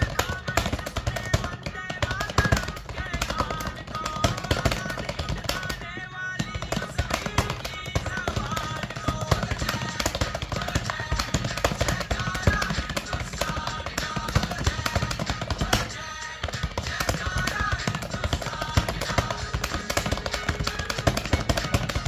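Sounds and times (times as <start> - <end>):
fast typing on keyboard: 0.0 - 5.8, 6.4 - 22.0
background music: 0.0 - 22.0.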